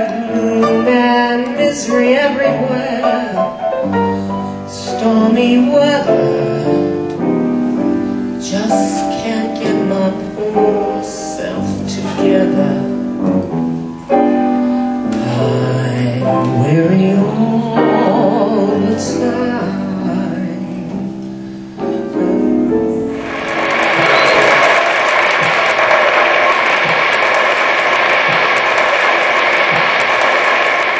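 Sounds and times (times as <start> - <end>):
woman singing jazz: 0.0 - 13.5, 15.0 - 23.2
piano chords: 0.0 - 30.9
audience applause: 23.1 - 30.9.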